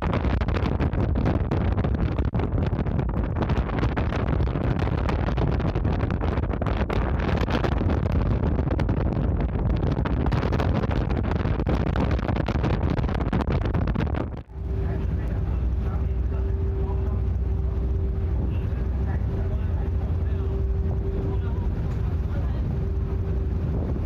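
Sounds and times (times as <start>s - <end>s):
ship engine rumble: 0.0s - 24.0s
wind buffeting microphone: 0.0s - 24.0s.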